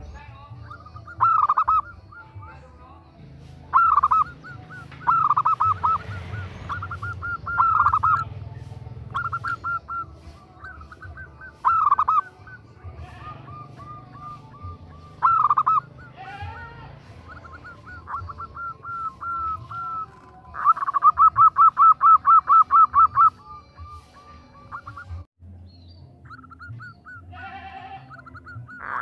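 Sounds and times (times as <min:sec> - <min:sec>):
dove cooing: 0:00.0 - 0:02.4, 0:03.7 - 0:25.3, 0:28.1 - 0:29.0.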